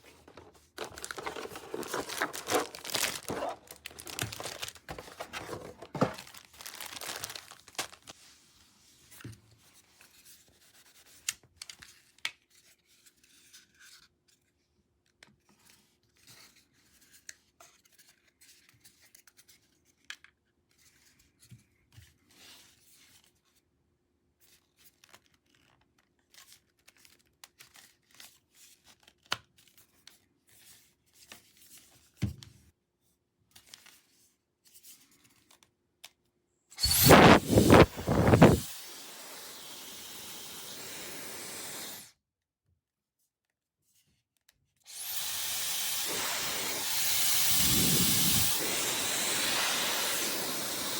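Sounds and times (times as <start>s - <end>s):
packaging crinkling and rustling: 0.0s - 8.2s.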